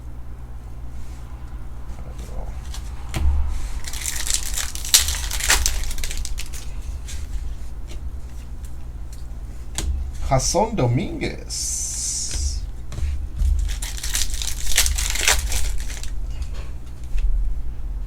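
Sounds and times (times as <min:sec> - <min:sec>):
steady low hum: 0:00.0 - 0:18.0
cards handled: 0:03.7 - 0:07.3, 0:12.3 - 0:16.2
wrappers torn and crinkled: 0:03.8 - 0:06.8, 0:13.4 - 0:16.3.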